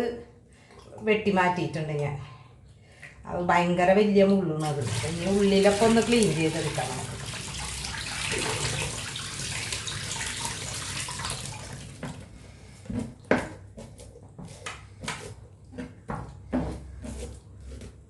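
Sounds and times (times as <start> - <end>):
tap water running: 4.6 - 13.4.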